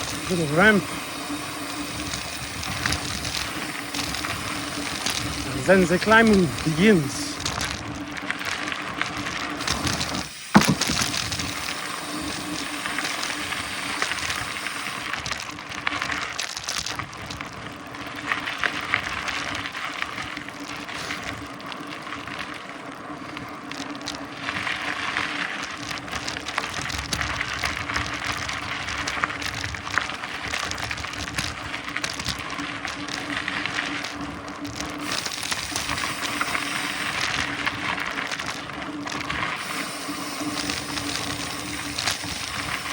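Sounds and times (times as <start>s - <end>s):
bike rattling: 0.0s - 42.9s
bike tyres on dirt and gravel: 0.0s - 42.9s
bike landing knock: 9.9s - 11.6s.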